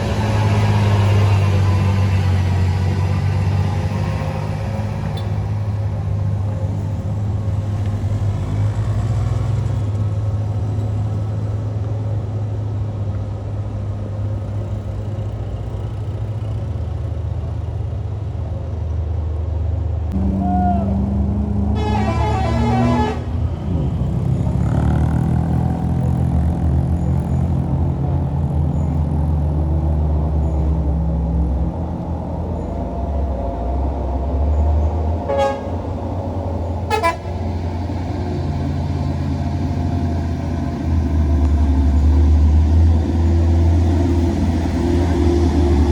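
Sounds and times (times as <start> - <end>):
heavy vehicle engine under load: 0.0 - 45.9
warbling bus horn: 21.7 - 23.4, 35.3 - 35.8, 36.8 - 37.4.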